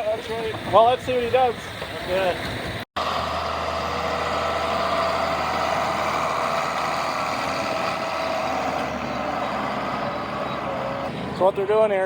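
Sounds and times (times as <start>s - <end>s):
tractor engine idling: 0.1s - 12.0s.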